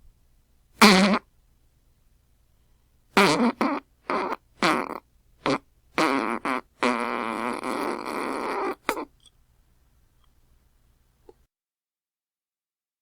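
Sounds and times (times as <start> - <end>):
fart sounds: 0.8 - 1.3, 3.2 - 9.1.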